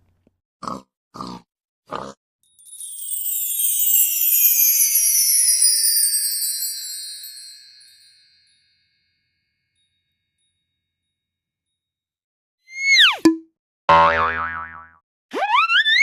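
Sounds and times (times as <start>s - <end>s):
shimmering chime sliding down: 2.5s - 8.4s.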